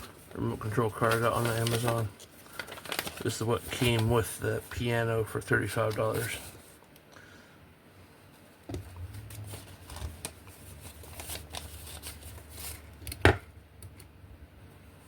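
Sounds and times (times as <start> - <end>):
low hum: 8.7 - 11.3.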